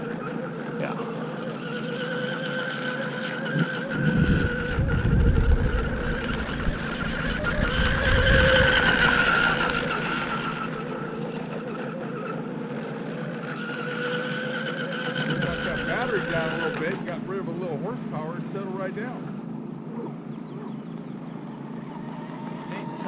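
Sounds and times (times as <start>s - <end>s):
electric motor whine: 0.0s - 23.0s
wind buffeting microphone: 3.4s - 11.1s.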